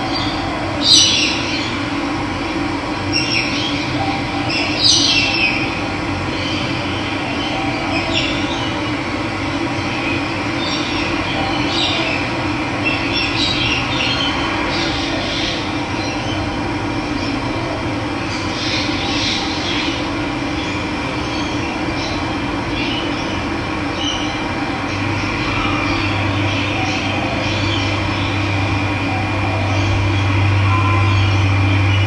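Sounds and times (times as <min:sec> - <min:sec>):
birds chirping: 0:00.0 - 0:01.9, 0:18.2 - 0:32.0.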